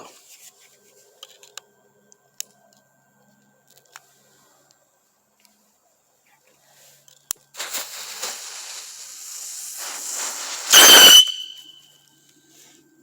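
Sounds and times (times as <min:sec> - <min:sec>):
firework burst: 0:07.6 - 0:11.8
firework fuse click: 0:07.6 - 0:11.8
hissing spray of sparks: 0:07.6 - 0:11.8
shrill ring: 0:10.7 - 0:12.0.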